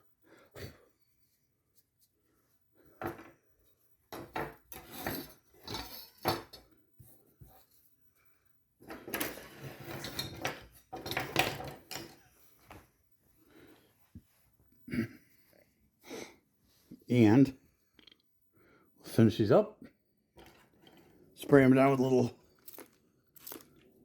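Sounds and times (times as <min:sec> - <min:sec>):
metal items clinking on bench: 0:04.1 - 0:06.8, 0:08.9 - 0:12.3.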